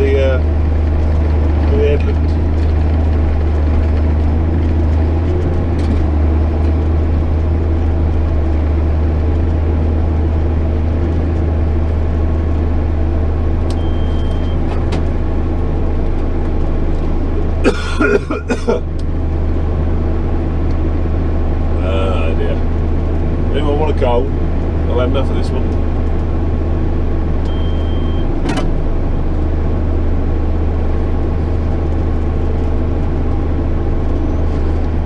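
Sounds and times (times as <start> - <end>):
tractor diesel engine droning: 0.0 - 35.0
person coughing: 17.6 - 18.9.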